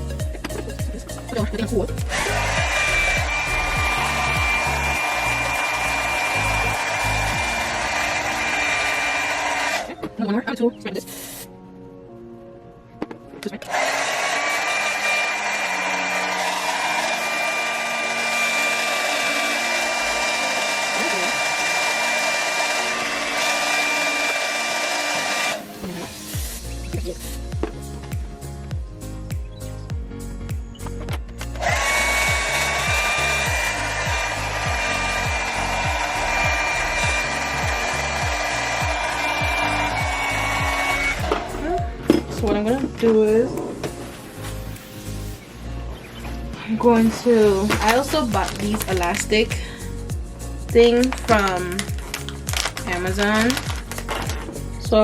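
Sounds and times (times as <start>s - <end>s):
hair dryer blowing: 1.1s - 10.0s, 13.7s - 27.3s, 31.5s - 45.5s, 47.0s - 54.5s.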